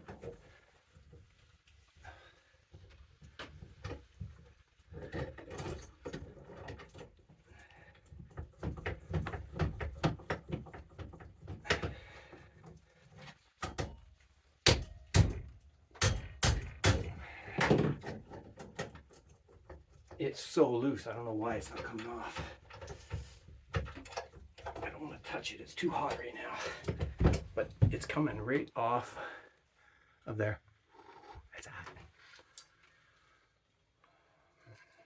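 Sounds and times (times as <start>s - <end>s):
loud sharp knocks: 14.7s - 18.0s.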